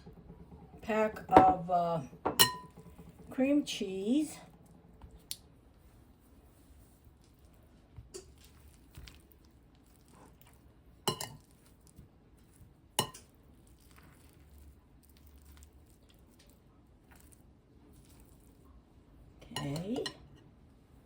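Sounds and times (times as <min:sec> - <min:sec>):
utensil clinking against pot: 0:02.2 - 0:03.2, 0:11.1 - 0:11.4.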